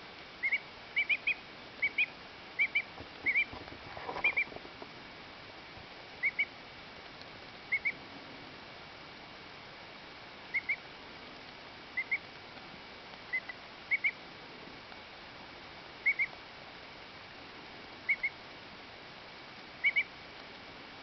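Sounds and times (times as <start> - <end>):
duckling peeping: 0.4 - 4.6, 6.2 - 6.5, 7.7 - 8.0, 10.5 - 10.8, 12.0 - 12.2, 13.3 - 14.2, 16.0 - 16.4, 18.0 - 18.4, 19.8 - 20.1.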